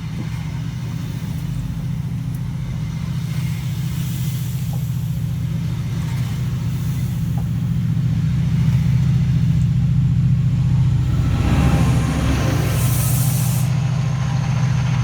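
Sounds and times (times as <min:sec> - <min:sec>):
diesel train engine drone: 0:00.6 - 0:15.0.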